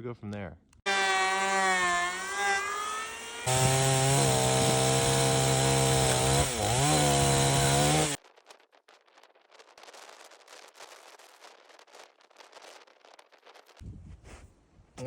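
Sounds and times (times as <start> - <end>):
chainsaw cutting timber: 0.9 - 8.2.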